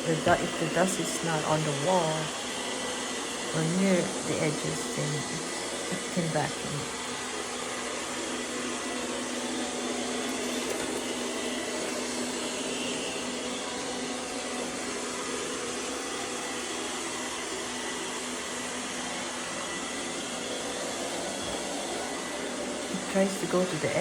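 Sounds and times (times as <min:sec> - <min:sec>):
robot vacuum motor whirring: 0:00.0 - 0:13.9.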